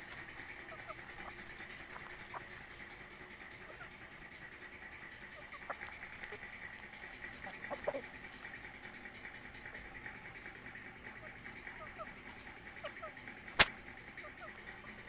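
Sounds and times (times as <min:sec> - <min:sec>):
birds calling: 0:00.0 - 0:15.0.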